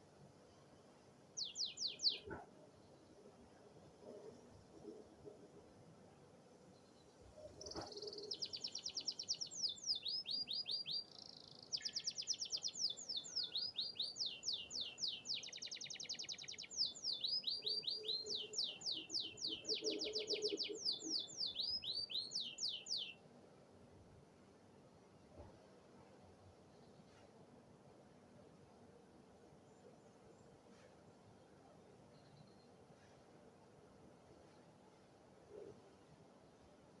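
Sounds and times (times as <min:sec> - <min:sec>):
canary singing trills: 0:01.4 - 0:02.4, 0:07.6 - 0:23.2.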